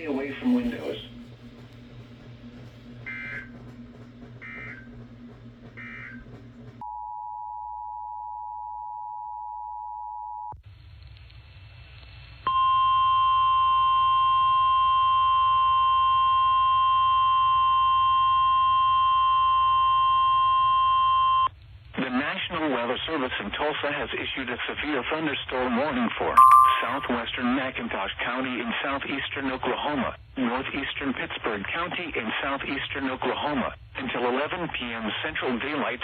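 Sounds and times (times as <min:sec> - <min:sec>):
loud weather radio alert tone: 0:00.0 - 0:01.2, 0:03.1 - 0:03.6
two-tone attention signal: 0:26.4 - 0:27.1.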